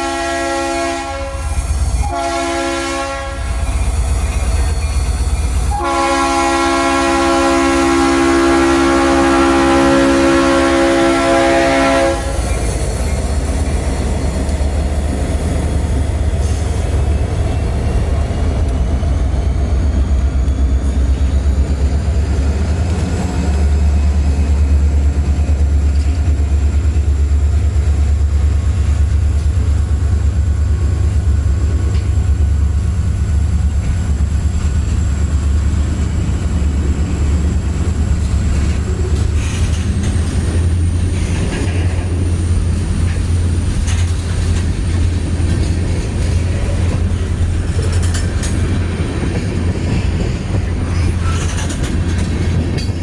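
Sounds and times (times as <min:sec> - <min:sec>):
locomotive horn chord: 0:00.0 - 0:03.6, 0:05.7 - 0:12.4
freight train rumbling past: 0:00.0 - 0:53.0.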